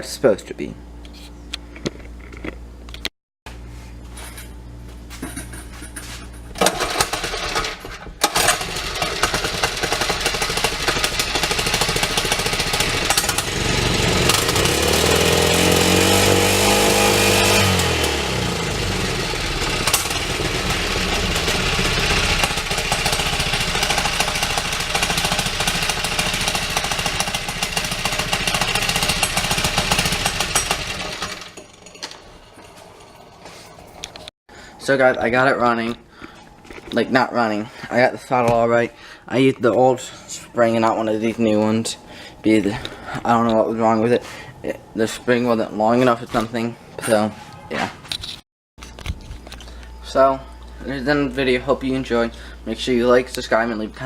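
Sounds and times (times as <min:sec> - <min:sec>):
small engine running and revving: 0:08.4 - 0:31.8.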